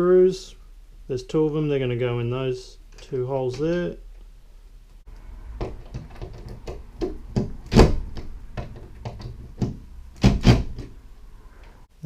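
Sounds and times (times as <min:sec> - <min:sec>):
loud thumps: 0:05.5 - 0:11.0
clicks and knocks of window lock: 0:05.6 - 0:11.0.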